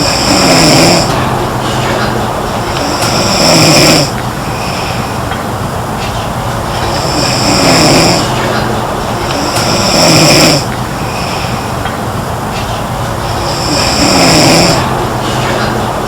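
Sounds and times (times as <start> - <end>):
girl snoring with whistle: 0.0 - 1.1, 6.9 - 8.6, 9.3 - 11.3, 13.5 - 14.9
steady background noise: 0.0 - 16.0.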